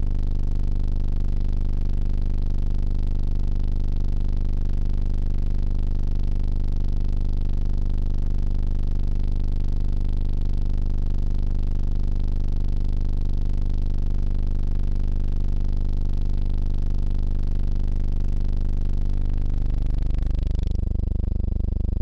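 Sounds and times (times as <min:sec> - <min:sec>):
buzzy analog synthesizer drone: 0:15.6 - 0:22.0.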